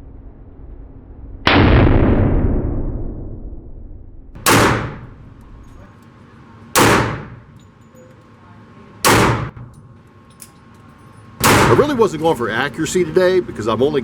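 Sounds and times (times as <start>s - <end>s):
pistol shots echoing indoors: 4.4s - 5.8s, 6.8s - 7.7s, 9.0s - 10.4s, 11.4s - 12.0s.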